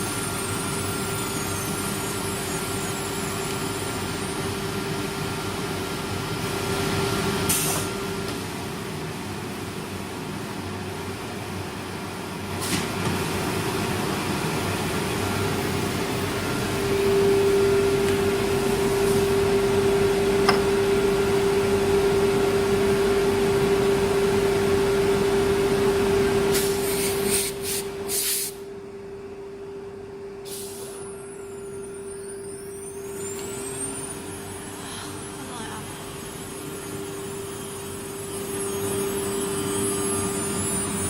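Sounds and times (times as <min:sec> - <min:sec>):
cnc router spindle whine: 0:00.0 - 0:09.0, 0:13.6 - 0:26.5, 0:31.1 - 0:41.0.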